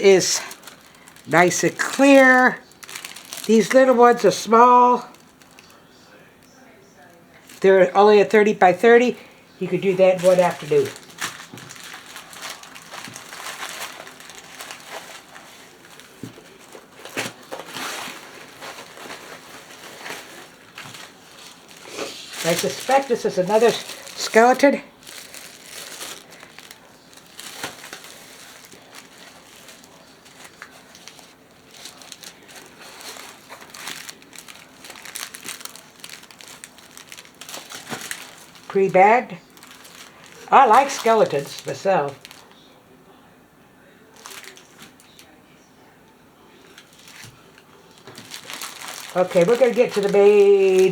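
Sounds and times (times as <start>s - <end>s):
plastic packaging crinkling: 0.0s - 42.7s, 44.1s - 45.4s, 46.5s - 50.9s.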